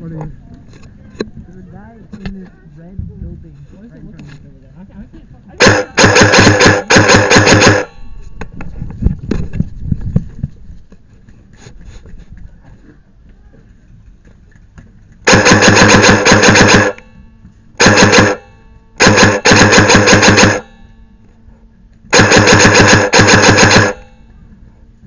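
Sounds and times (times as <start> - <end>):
airsoft gun firing bursts: 5.6 - 8.0, 15.2 - 17.1, 17.8 - 20.8, 22.1 - 24.2.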